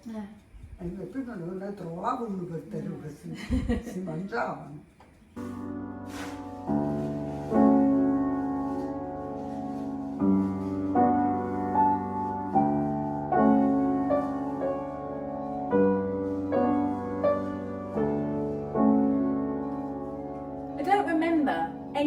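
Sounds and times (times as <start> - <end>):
slow piano melody: 5.3 - 22.0.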